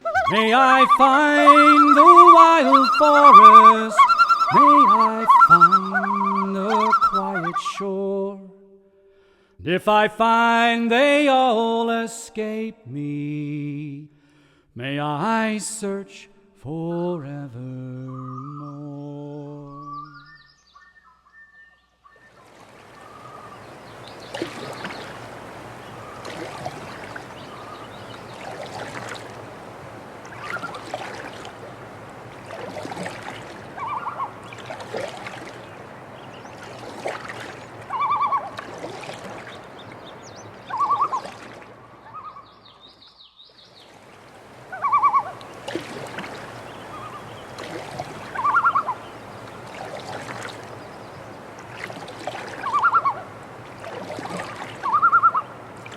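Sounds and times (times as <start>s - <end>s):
birds honking: 0.0s - 7.8s
water splashing from paddle strokes: 0.0s - 7.8s, 26.2s - 33.8s, 34.4s - 35.9s, 36.5s - 40.0s, 40.7s - 41.7s, 45.4s - 46.6s, 47.5s - 48.9s, 49.6s - 50.8s, 51.6s - 53.0s, 53.6s - 55.2s.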